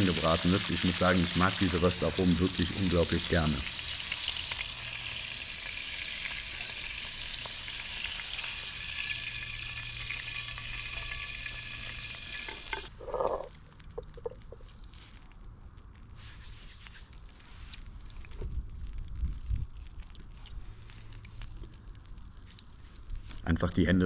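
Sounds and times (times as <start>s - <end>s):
steaks sizzling in a pan: 0.0s - 12.9s.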